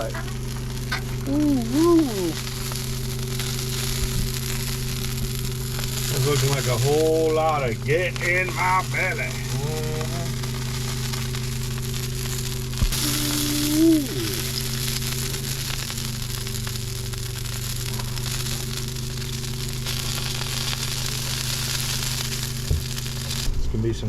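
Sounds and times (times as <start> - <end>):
person humming: 0.0 - 2.4, 9.4 - 10.4, 12.9 - 14.8
meat sizzling: 0.0 - 23.6
low hum: 0.0 - 24.0.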